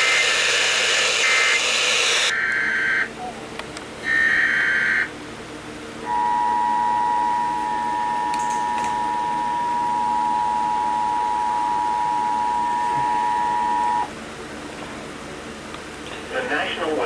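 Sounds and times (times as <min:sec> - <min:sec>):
two-tone alert signal: 0:04.1 - 0:05.1, 0:06.1 - 0:14.1.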